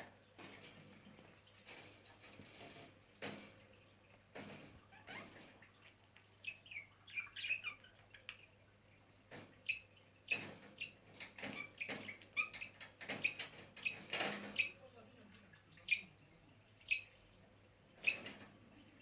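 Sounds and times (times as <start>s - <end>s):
budgerigars chirping: 15.7s - 17.3s.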